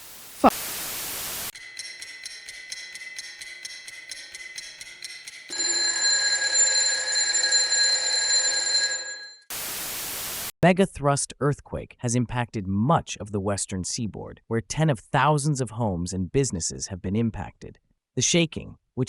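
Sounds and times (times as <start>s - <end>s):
electronic ringing sounder: 1.6s - 9.8s.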